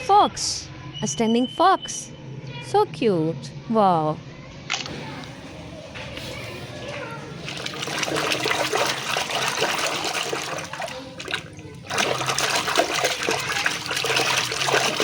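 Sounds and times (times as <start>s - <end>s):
running water splashing: 4.9s - 15.0s.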